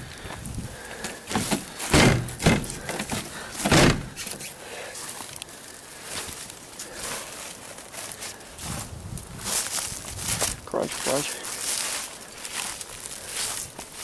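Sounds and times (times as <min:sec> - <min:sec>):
rustling: 0:00.1 - 0:10.6
car door knocking and shutting: 0:01.3 - 0:04.2.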